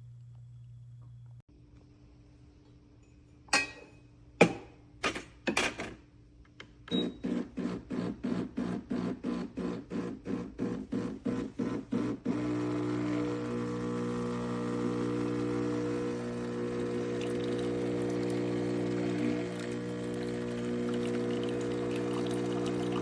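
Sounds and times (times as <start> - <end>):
espresso machine pump: 7.2 - 23.0.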